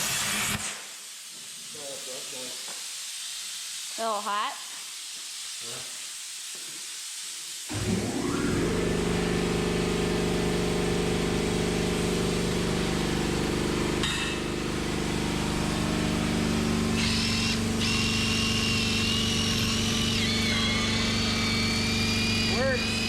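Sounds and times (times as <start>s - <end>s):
motor running steadily: 7.7s - 23.0s
high wavering whine: 12.7s - 23.0s.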